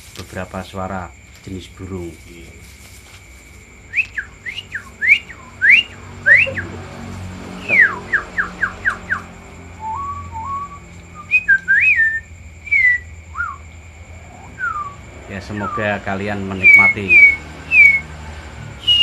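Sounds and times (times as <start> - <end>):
man whistling birdsong: 3.9 - 6.7, 7.6 - 9.2, 9.8 - 13.6, 14.4 - 18.1, 18.8 - 19.0.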